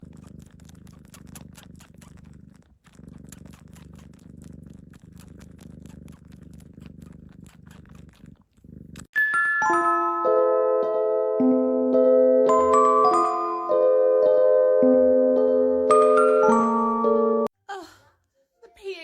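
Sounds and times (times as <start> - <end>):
cat purring: 0.0 - 9.2.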